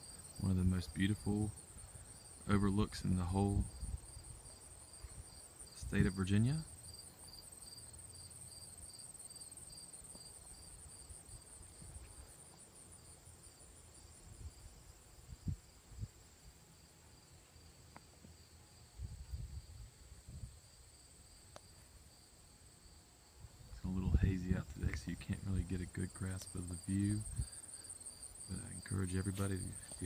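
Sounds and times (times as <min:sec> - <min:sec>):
insects trilling: 0:00.0 - 0:19.9, 0:20.6 - 0:30.0
wind gusts on microphone: 0:03.6 - 0:04.4, 0:14.3 - 0:16.2, 0:19.0 - 0:20.7, 0:26.9 - 0:27.6
insect pulsing chirp: 0:19.0 - 0:30.0.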